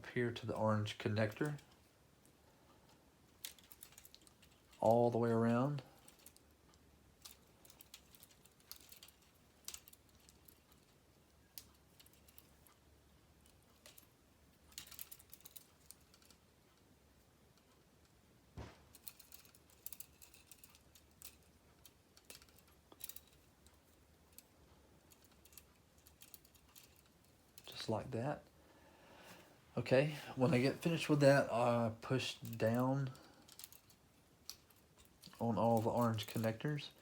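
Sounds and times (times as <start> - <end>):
plastic pieces clicking together: 3.4 - 4.9, 5.7 - 12.7, 13.4 - 16.8, 18.9 - 27.8, 32.3 - 37.0
dull knock: 18.6 - 18.9.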